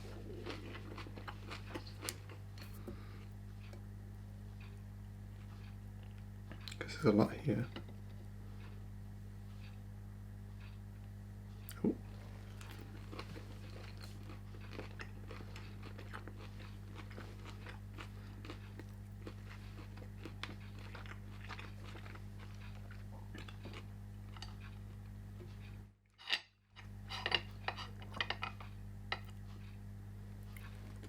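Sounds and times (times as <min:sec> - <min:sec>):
person chewing crunchy food: 0:00.0 - 0:03.9, 0:11.6 - 0:25.8, 0:26.8 - 0:31.0
low electrical hum: 0:00.0 - 0:31.0.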